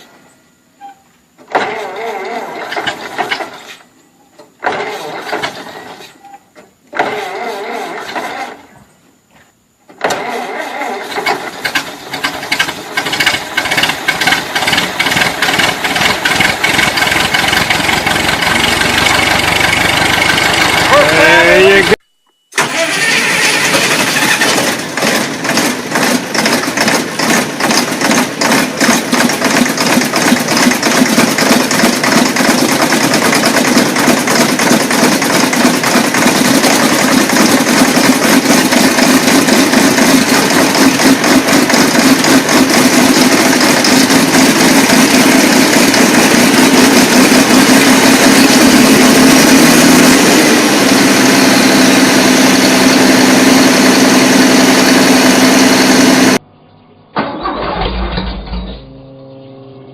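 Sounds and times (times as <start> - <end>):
large engine running: 11.0 - 22.0, 22.6 - 56.4.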